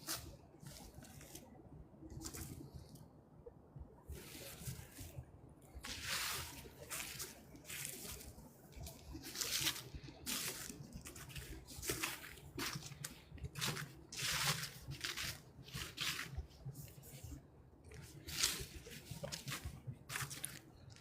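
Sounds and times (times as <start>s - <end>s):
footsteps on dry leaves: 0.0s - 1.5s, 5.8s - 17.2s, 17.9s - 21.0s.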